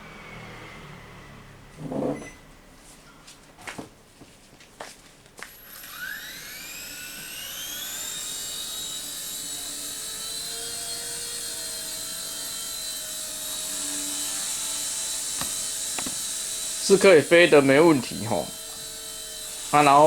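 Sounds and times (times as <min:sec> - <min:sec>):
toy helicopter motor whine: 0:05.5 - 0:20.0.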